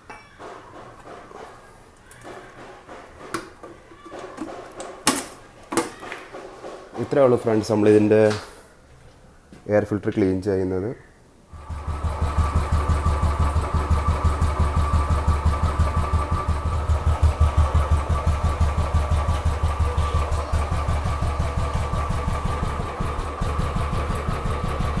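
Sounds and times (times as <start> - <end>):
motorcycle engine starting and idling: 11.5 - 25.0.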